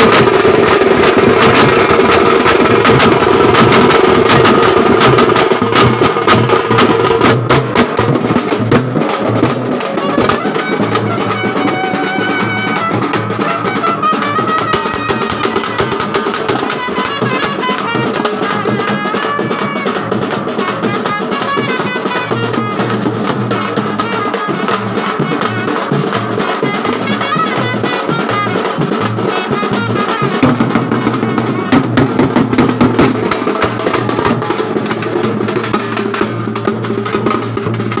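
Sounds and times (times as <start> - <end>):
snare and bass drums: 0.0 - 38.0
street band playing: 0.0 - 38.0
wind instrument melody: 9.0 - 37.8.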